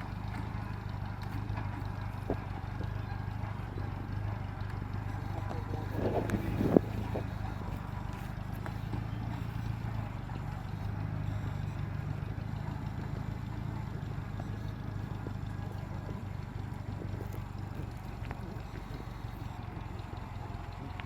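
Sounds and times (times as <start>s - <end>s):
tractor engine running: 0.0s - 21.0s.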